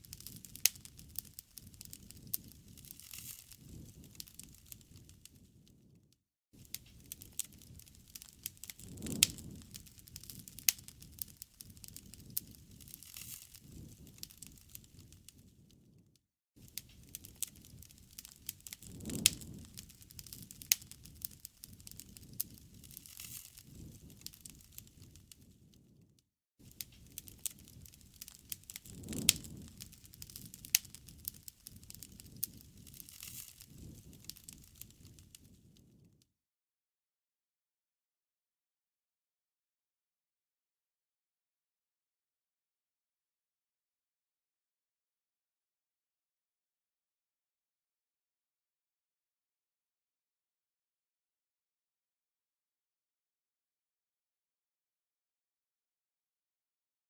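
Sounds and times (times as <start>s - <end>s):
wood fire crackling and popping: 0.0s - 6.0s, 6.6s - 16.0s, 16.6s - 36.1s.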